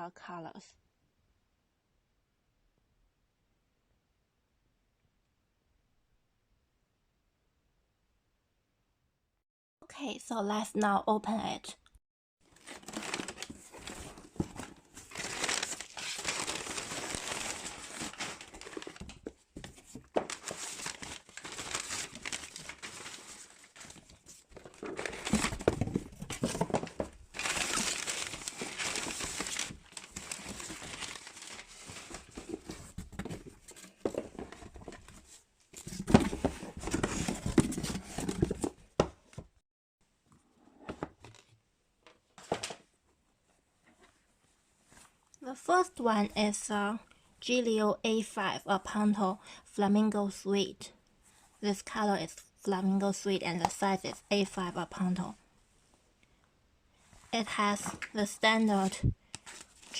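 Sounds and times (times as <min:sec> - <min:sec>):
packaging crinkling and tearing: 0:12.5 - 0:19.3, 0:19.9 - 0:32.8.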